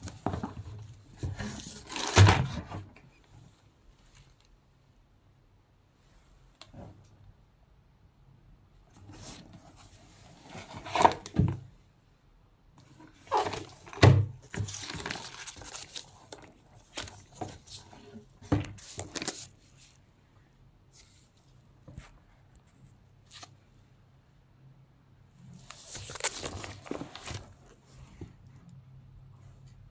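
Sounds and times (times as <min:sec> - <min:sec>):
packaging rustling: 0:13.2 - 0:20.0, 0:25.6 - 0:27.8.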